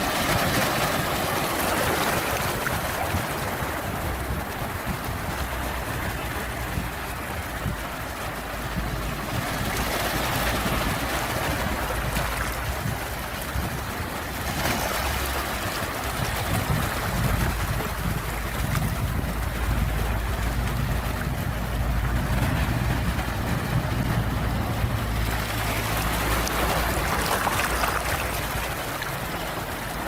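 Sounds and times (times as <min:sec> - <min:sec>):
sea waves washing ashore: 0:00.0 - 0:30.0
low rumble: 0:16.6 - 0:28.7.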